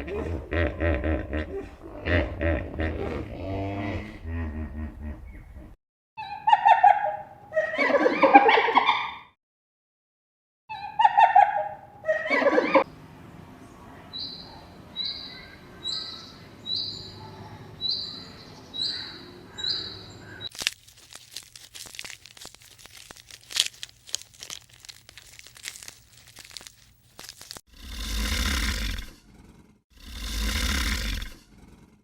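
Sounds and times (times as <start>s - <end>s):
bird calling: 14.2s - 20.5s
crackling and clicking: 20.5s - 27.6s.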